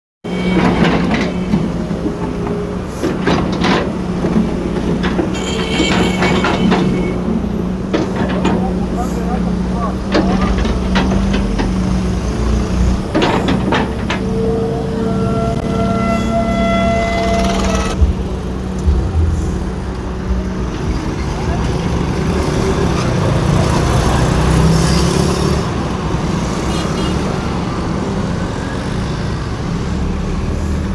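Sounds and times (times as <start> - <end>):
heavy machine engine humming: 0.3 - 24.6
sharp knocks and clanks: 0.4 - 14.4, 17.3 - 22.1.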